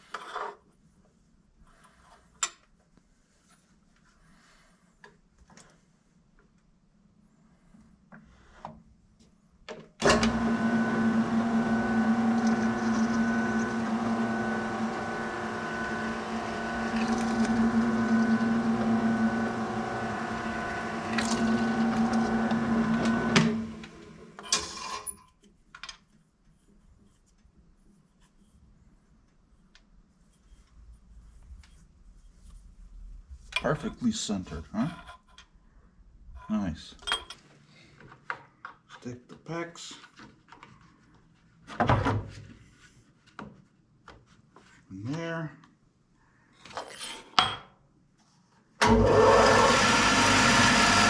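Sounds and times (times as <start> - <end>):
electric power tool motor running: 10.0 - 24.3, 48.8 - 51.0.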